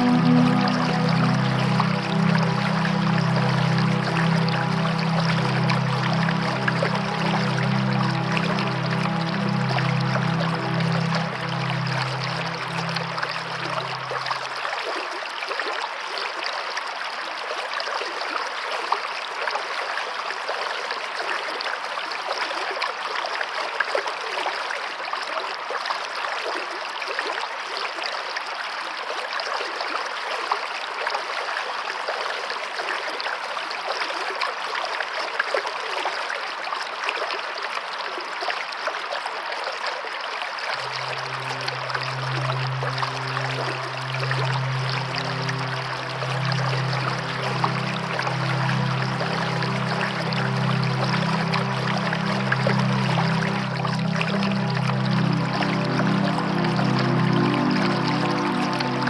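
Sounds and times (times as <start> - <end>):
low musical drone: 0.0 - 15.0, 40.8 - 59.0.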